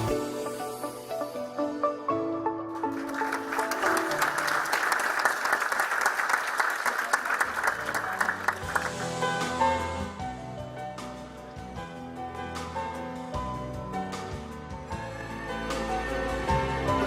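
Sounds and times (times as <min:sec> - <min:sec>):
background music: 0:00.0 - 0:05.2, 0:07.5 - 0:17.0
audience applauding: 0:02.8 - 0:09.6.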